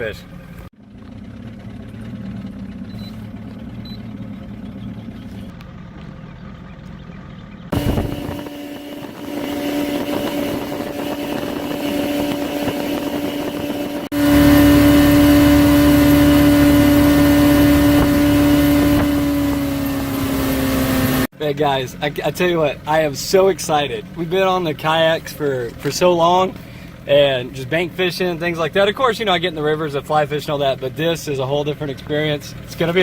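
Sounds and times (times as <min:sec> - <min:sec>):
boat motor running: 0:00.0 - 0:33.0
water rushing: 0:07.8 - 0:21.3.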